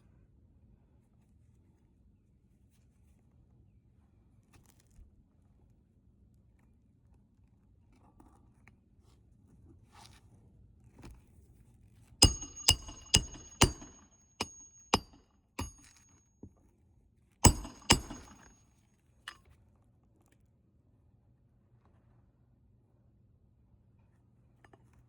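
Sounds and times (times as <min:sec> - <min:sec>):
hammer blows on metal nails: 0:12.2 - 0:16.1, 0:17.4 - 0:18.6.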